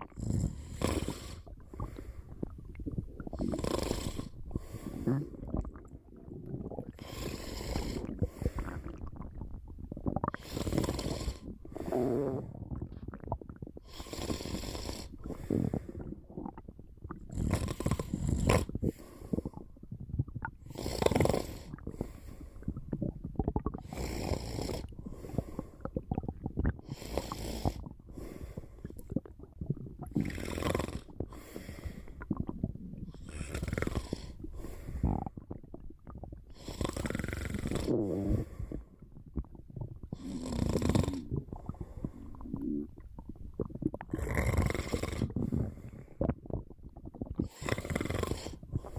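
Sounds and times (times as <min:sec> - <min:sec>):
person snoring: 0:00.2 - 0:01.4, 0:03.4 - 0:05.6, 0:07.0 - 0:09.0, 0:10.4 - 0:12.6, 0:13.8 - 0:16.0, 0:17.3 - 0:19.5, 0:20.7 - 0:21.7, 0:23.8 - 0:25.5, 0:30.2 - 0:31.8, 0:33.2 - 0:35.4, 0:36.6 - 0:38.8, 0:40.2 - 0:42.9, 0:44.1 - 0:45.9, 0:47.4 - 0:48.9.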